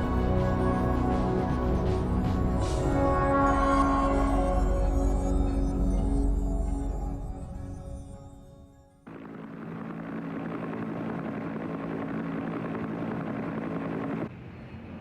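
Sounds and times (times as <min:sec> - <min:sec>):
music: 0:00.0 - 0:09.1
engine drone: 0:09.1 - 0:14.5.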